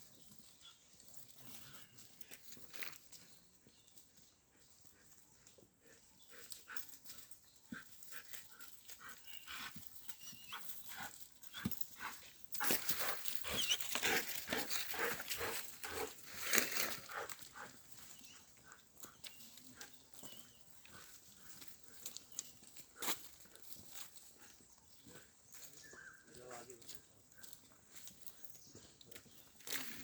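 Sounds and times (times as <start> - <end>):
faint squeaks: 13.0 - 14.0.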